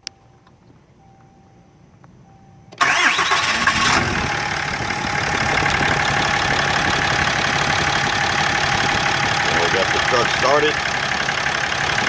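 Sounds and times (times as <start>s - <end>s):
diesel engine starting and idling: 2.2s - 12.0s
engine starter whine: 2.7s - 12.0s.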